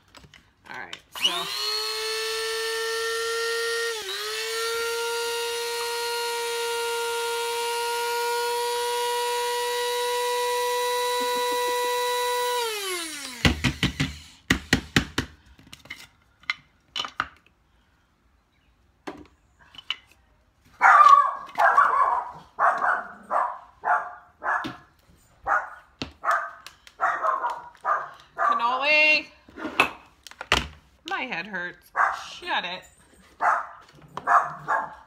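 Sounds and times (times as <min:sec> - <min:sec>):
dog barking: 0:20.8 - 0:28.7, 0:32.0 - 0:32.3, 0:33.4 - 0:35.0.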